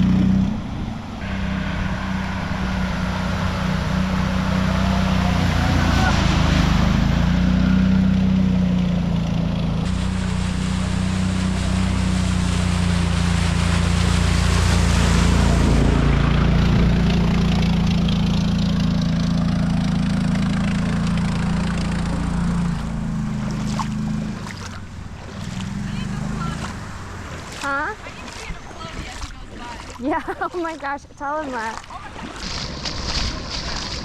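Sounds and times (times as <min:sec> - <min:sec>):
rushing water or wind noise: 0:00.0 - 0:34.0
small engine running: 0:01.2 - 0:27.9.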